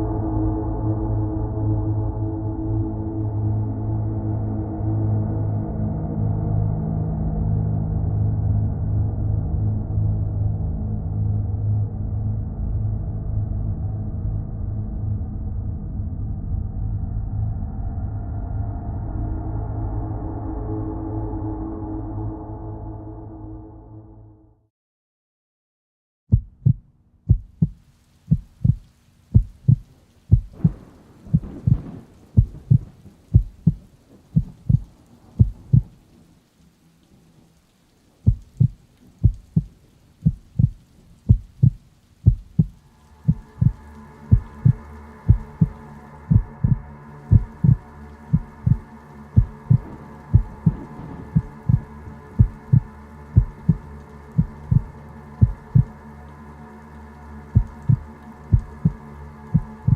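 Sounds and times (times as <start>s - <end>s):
droning chord: 0.0s - 24.4s
heartbeat thuds: 26.3s - 36.0s, 38.3s - 48.8s, 49.4s - 55.9s, 57.6s - 59.0s, 59.6s - 59.9s.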